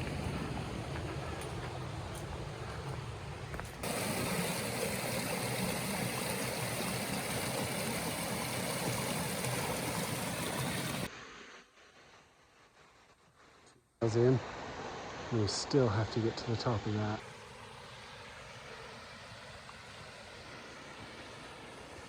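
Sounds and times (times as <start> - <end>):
running water rushing: 0.0 - 11.1.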